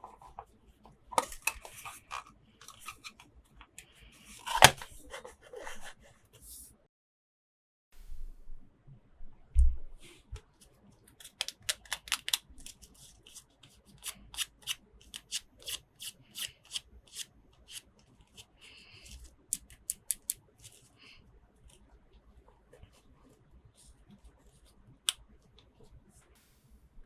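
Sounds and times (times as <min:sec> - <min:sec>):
plastic parts clicking and crinkling: 0:01.1 - 0:03.8, 0:04.4 - 0:05.0, 0:11.1 - 0:13.4, 0:14.0 - 0:17.8, 0:19.1 - 0:20.8.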